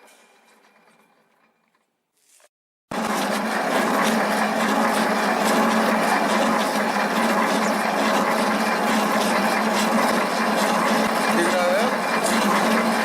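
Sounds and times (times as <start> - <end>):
lathe running with constant hum: 2.9 - 13.0.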